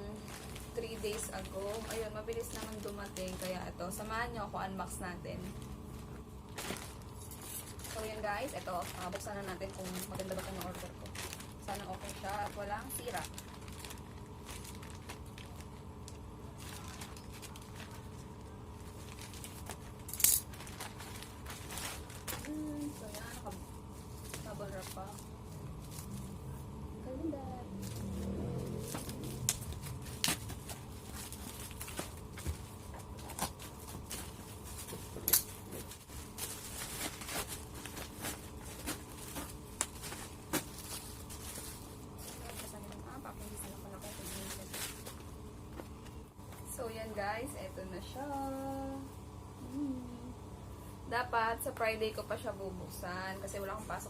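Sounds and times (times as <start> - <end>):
low room hum: 0.0 - 54.0
parcel packaging rustling: 0.1 - 4.3, 5.0 - 26.6, 27.8 - 46.1.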